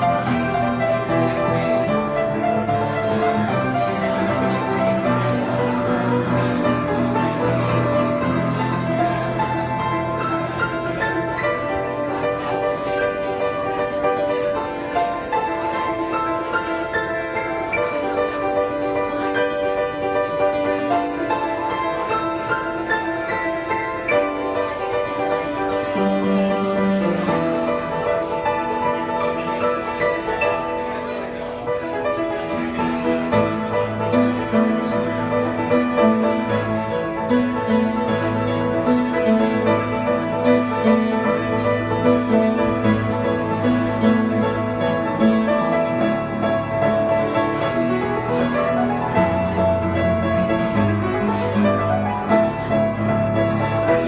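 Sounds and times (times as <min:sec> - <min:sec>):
solo piano: 0:00.0 - 0:54.0.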